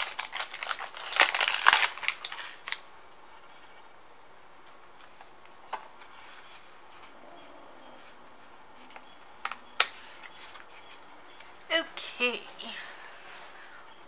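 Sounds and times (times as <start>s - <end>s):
foil card pack crinkling: 0.0s - 2.9s.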